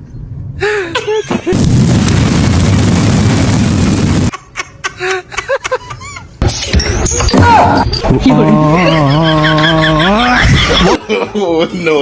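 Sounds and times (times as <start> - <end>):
loud harsh burst of noise: 1.0 - 4.3.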